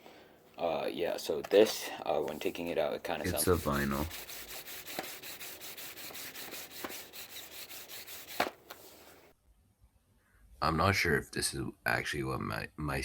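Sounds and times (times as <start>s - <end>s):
vinyl record rasping on surface: 3.2s - 9.0s.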